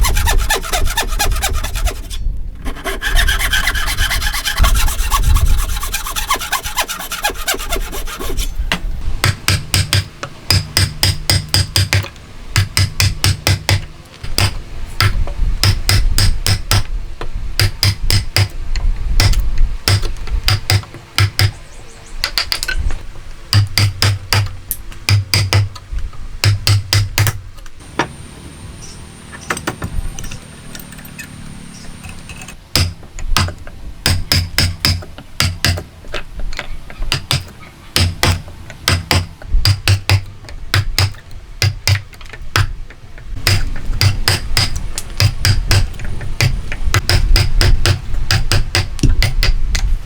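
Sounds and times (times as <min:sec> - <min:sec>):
hand tool scraping wood: 0:00.0 - 0:08.6.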